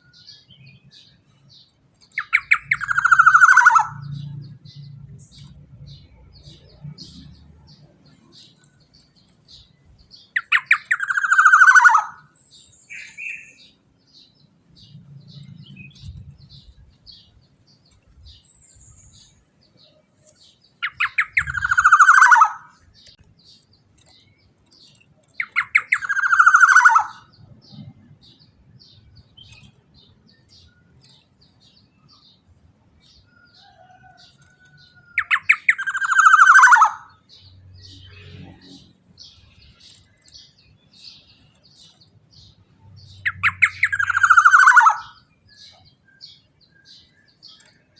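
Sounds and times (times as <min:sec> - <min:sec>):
bird calling harshly: 0:02.2 - 0:04.0, 0:10.4 - 0:12.3, 0:20.8 - 0:22.8, 0:25.4 - 0:27.3, 0:35.2 - 0:37.2, 0:43.3 - 0:45.2.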